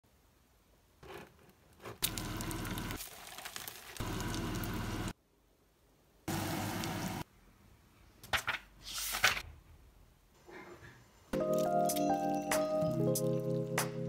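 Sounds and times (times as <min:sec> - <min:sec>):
packaging rustling: 0:02.0 - 0:04.6.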